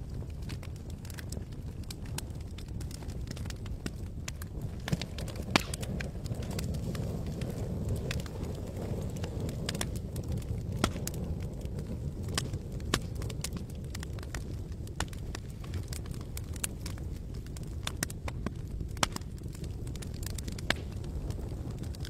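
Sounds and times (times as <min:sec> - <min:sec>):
campfire crackling: 0:00.0 - 0:22.0
sharp pops of fire: 0:00.0 - 0:22.0.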